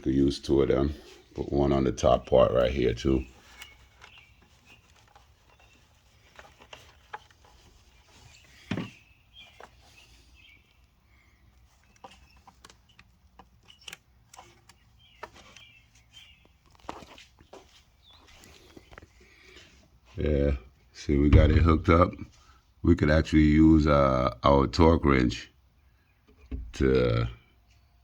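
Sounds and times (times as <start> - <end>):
metallic knock: 21.3 - 21.9.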